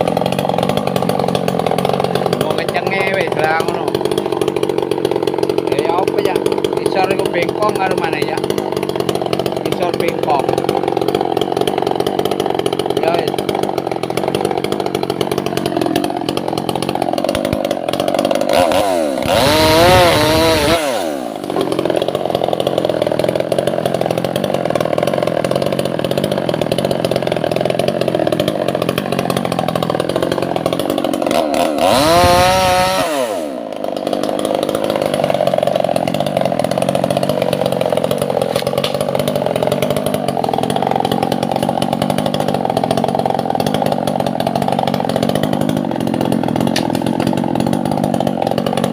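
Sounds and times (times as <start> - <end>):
chainsaw cutting wood: 0.0 - 48.9.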